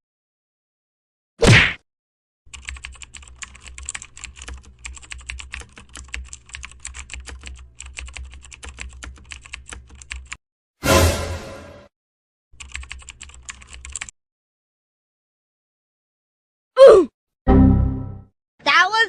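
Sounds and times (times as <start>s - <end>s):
rapid keyboard typing: 2.5s - 10.4s, 12.6s - 14.1s.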